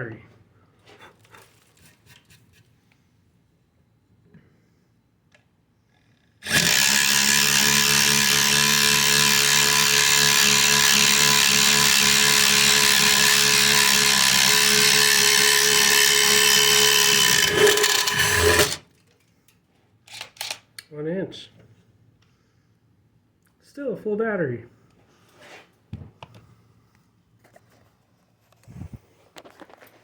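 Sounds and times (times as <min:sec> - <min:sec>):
impact driver boring through wood: 0:06.4 - 0:18.9.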